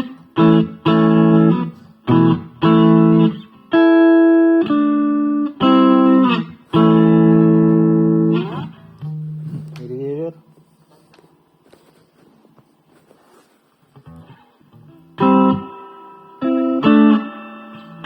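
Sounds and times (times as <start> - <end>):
electric guitar chords: 0.0 - 10.6, 14.0 - 18.0.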